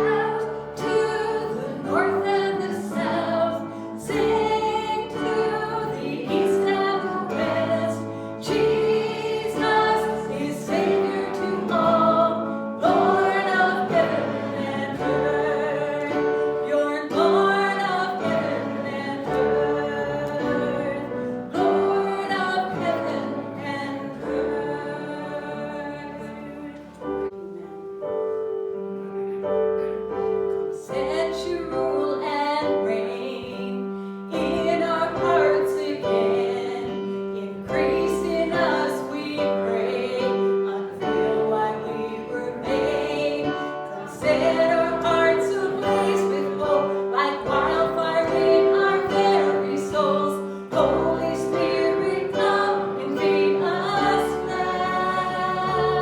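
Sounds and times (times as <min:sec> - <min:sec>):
voices singing worship song: 0:00.0 - 0:27.8, 0:30.6 - 0:56.0
instrumental accompaniment: 0:00.0 - 0:31.2.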